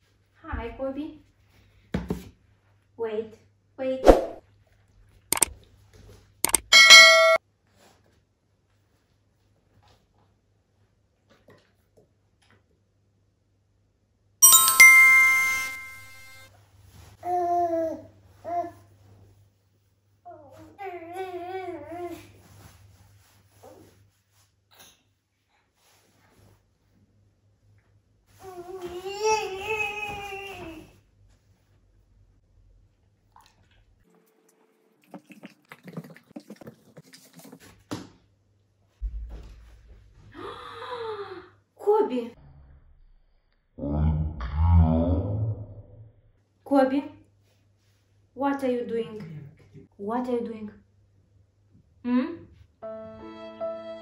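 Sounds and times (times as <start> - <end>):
metallic bell-like chime: 6.7 - 7.4, 14.4 - 16.5
dog chewing and crunching food: 33.3 - 37.9
low thump: 39.0 - 39.8.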